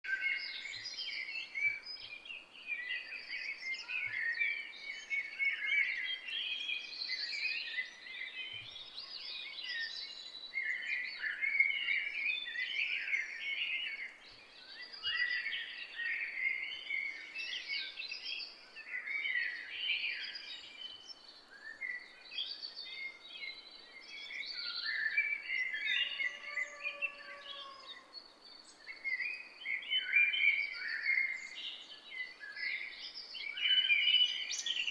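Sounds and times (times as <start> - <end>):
small birds chirping: 0.0 - 34.9
low whistled bird call: 24.9 - 28.1.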